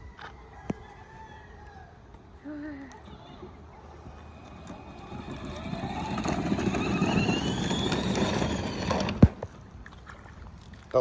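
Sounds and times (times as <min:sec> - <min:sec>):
vehicle engine accelerating: 0:03.0 - 0:09.6.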